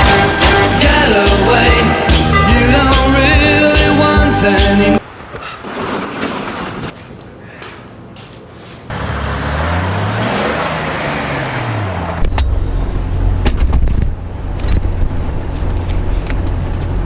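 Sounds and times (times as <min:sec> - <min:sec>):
car engine revving: 0:00.0 - 0:04.4, 0:08.9 - 0:17.0
engine sharp knocks: 0:12.2 - 0:17.0.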